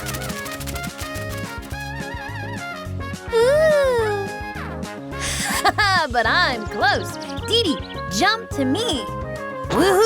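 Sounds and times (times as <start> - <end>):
cartoon background music: 0.0 - 10.0.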